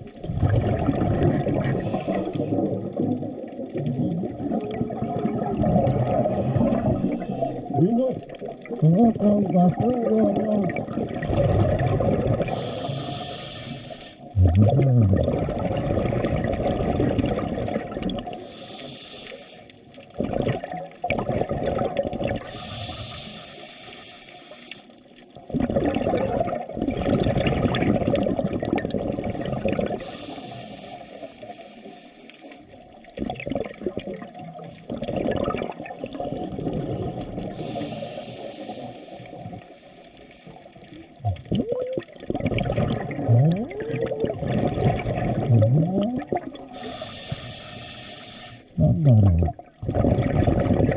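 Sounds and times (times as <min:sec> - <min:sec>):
water rushing and bubbling: 0:00.0 - 0:50.9.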